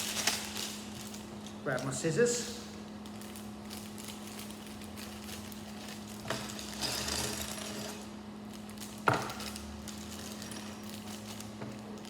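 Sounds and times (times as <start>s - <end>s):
plastic bag crinkling: 0.0s - 6.8s, 8.4s - 12.0s.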